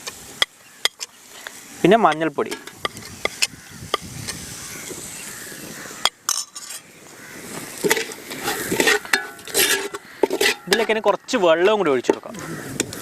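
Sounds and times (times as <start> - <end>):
food sizzling in hot oil: 0.0 - 11.2
spoon scraping and clinking pan: 2.1 - 3.5, 6.0 - 6.9, 7.8 - 12.3.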